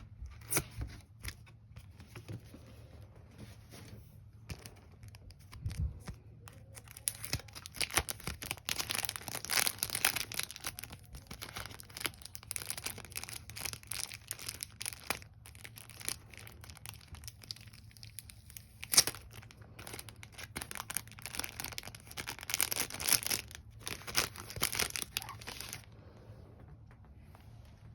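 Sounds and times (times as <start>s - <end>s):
card packaging tearing and crinkling: 4.5s - 25.9s.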